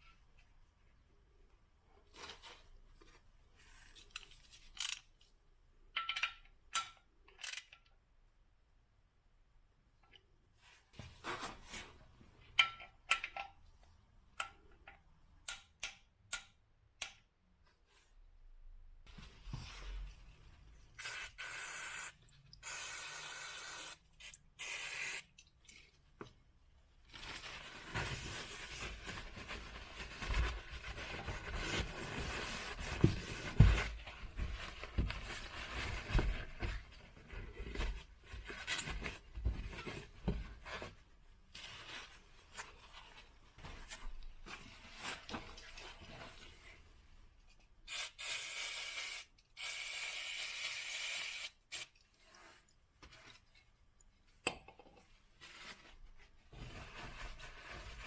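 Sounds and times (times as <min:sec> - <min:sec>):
rubbing and handling noise: 0:25.6 - 0:47.8, 0:52.0 - 0:54.4, 0:55.0 - 0:58.0.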